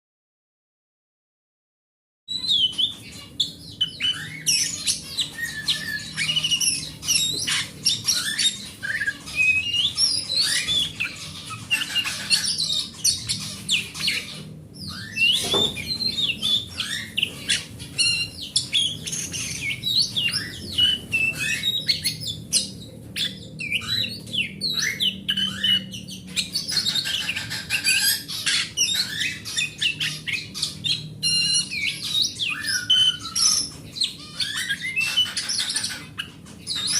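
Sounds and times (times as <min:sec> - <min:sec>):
bird singing whistles and trills: 0:02.3 - 0:36.9.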